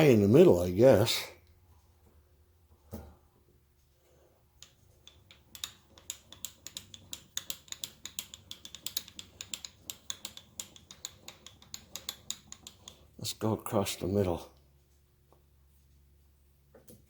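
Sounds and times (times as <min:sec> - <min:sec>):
rapid mechanical clicking: 0:04.6 - 0:13.2.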